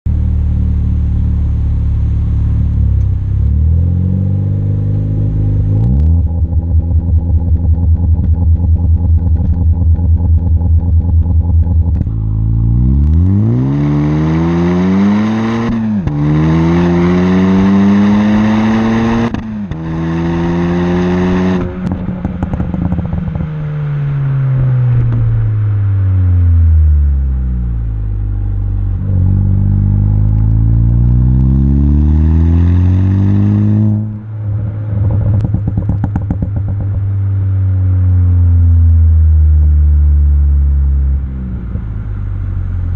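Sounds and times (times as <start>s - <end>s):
car exhaust revving: 0.1s - 42.9s
exhaust crackles and pops: 5.8s - 13.3s, 21.5s - 23.8s, 24.6s - 26.7s, 27.8s - 31.6s, 34.0s - 37.4s.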